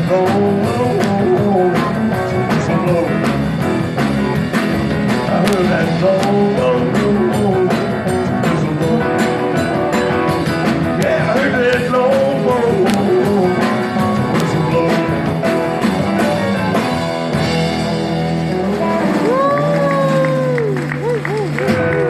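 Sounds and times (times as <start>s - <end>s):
rock band playing: 0.0s - 22.0s.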